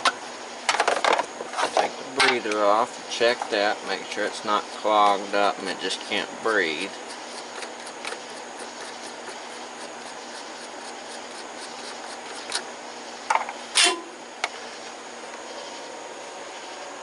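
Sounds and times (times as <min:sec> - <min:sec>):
clicks and knocks of engine cover: 0:00.0 - 0:02.4
steady background hum: 0:00.0 - 0:17.0.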